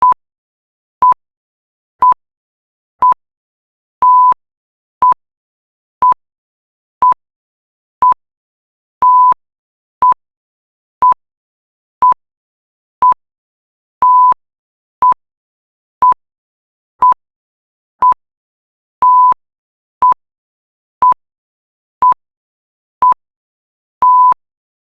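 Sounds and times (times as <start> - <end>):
electronic countdown beeps: 2.0 - 2.2, 3.0 - 3.2, 4.0 - 4.4, 9.0 - 9.4, 14.0 - 14.4, 17.0 - 17.2, 18.0 - 18.2, 19.0 - 19.4, 24.0 - 24.4.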